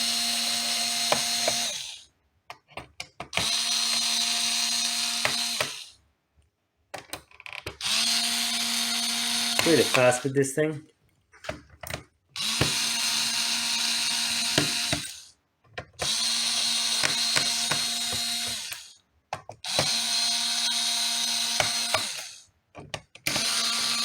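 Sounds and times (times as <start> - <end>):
electric screwdriver whining: 0.0 - 2.1, 3.3 - 6.0, 7.7 - 10.3, 12.4 - 15.3, 16.0 - 19.0, 19.6 - 22.4, 23.2 - 24.0.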